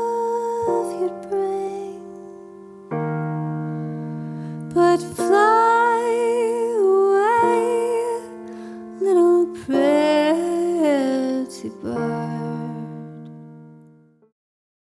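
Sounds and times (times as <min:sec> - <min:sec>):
woman singing with vibrato: 0:00.0 - 0:02.2, 0:04.6 - 0:13.2
sustained keyboard chords: 0:00.0 - 0:14.2.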